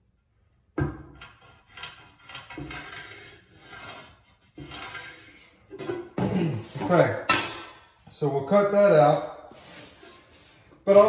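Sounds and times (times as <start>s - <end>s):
tile rubbing and scraping: 1.0s - 7.8s, 9.0s - 11.0s.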